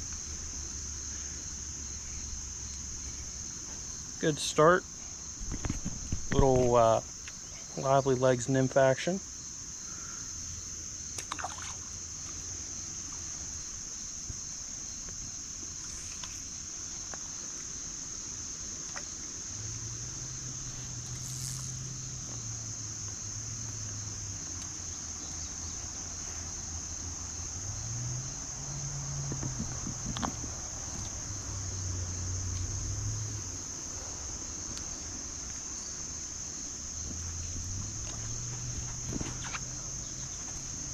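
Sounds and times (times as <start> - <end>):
creek water hiss: 0.0 - 40.9
crickets chirping: 0.0 - 40.9.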